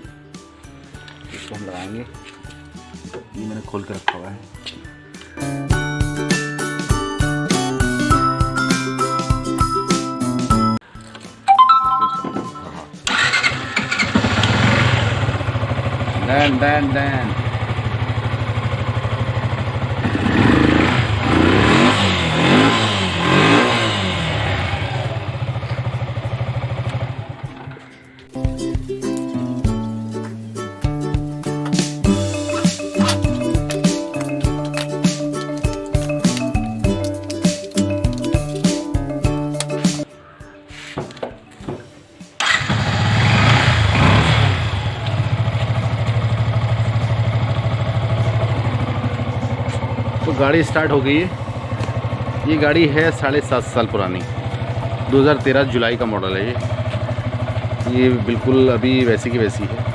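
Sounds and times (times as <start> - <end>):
motorcycle engine revving: 13.0 - 27.8, 42.4 - 59.9.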